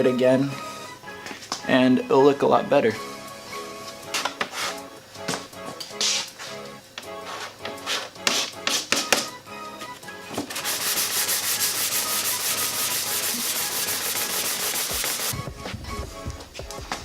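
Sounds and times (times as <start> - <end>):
sandpaper scraping plastic: 4.2 - 4.8, 10.5 - 15.4.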